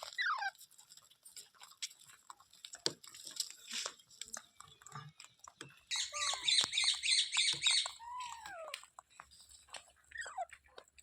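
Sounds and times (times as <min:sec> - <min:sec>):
parrot squawking: 0:05.9 - 0:08.8.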